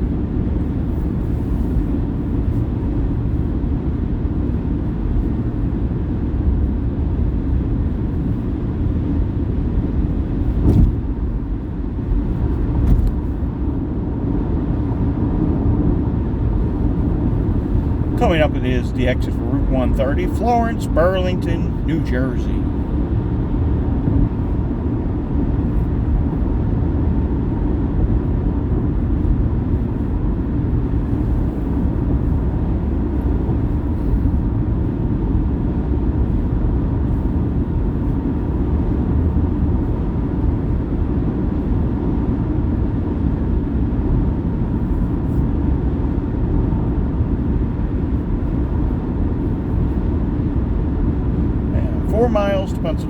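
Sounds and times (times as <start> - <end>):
road and tyre noise inside car: 0.0 - 53.0
faint steady whine: 16.4 - 23.3, 48.2 - 53.0.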